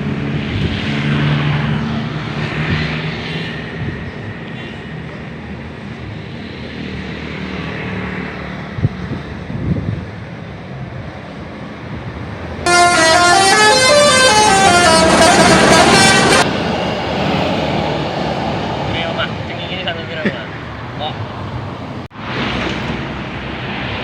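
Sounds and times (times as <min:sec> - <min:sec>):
bus engine and road noise: 0:00.0 - 0:24.0
multi-tone air horn melody: 0:12.7 - 0:16.5.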